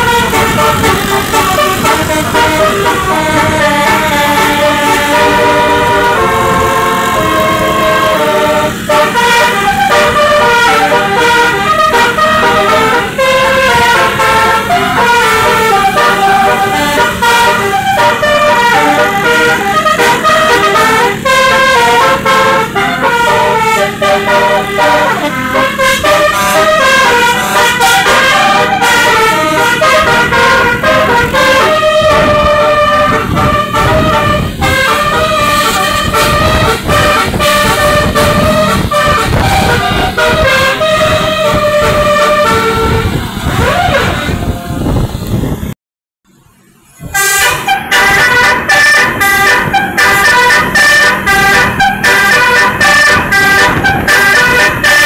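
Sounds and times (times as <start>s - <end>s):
bus engine rumble: 0.0s - 55.0s
musical bus horn melody: 0.0s - 55.0s.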